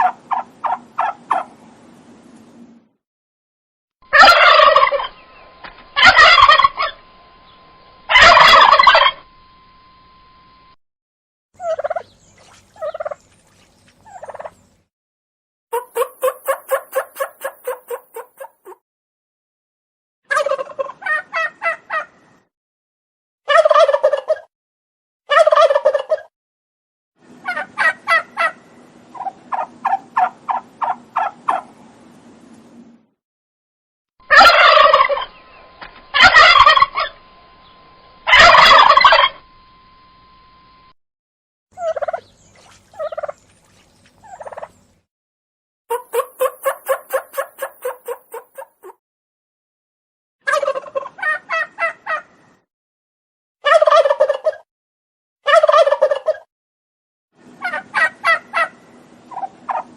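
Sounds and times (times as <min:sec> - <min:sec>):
turkey gobbling calls: 0:00.0 - 0:01.6, 0:04.1 - 0:05.2, 0:06.0 - 0:07.0, 0:08.1 - 0:09.2, 0:11.6 - 0:12.1, 0:12.8 - 0:13.2, 0:14.0 - 0:14.6, 0:15.7 - 0:18.8, 0:20.3 - 0:22.2, 0:23.5 - 0:24.5, 0:25.3 - 0:26.3, 0:27.4 - 0:31.7, 0:34.3 - 0:35.4, 0:36.1 - 0:37.2, 0:38.3 - 0:39.4, 0:41.8 - 0:42.3, 0:42.9 - 0:43.4, 0:44.2 - 0:44.8, 0:45.9 - 0:49.0, 0:50.5 - 0:52.3, 0:53.6 - 0:54.6, 0:55.5 - 0:56.5, 0:57.6 - 0:59.9.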